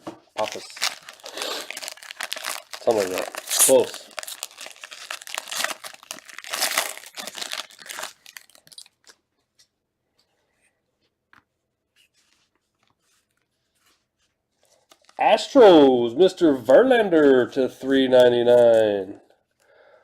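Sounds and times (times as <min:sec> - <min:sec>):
plastic wrapping crinkling and tearing: 0:00.4 - 0:09.3, 0:14.8 - 0:15.4.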